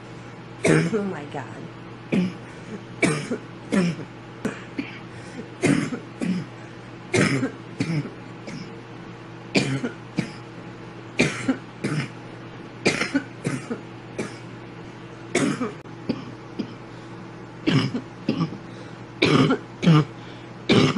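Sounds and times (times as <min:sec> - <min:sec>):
faint steady hum: 0:00.0 - 0:20.9
woman coughing: 0:00.6 - 0:01.4, 0:02.1 - 0:06.5, 0:07.1 - 0:08.7, 0:09.6 - 0:10.4, 0:11.2 - 0:12.2, 0:12.9 - 0:14.5, 0:15.3 - 0:16.8, 0:17.7 - 0:18.6, 0:19.2 - 0:20.1, 0:20.7 - 0:20.9.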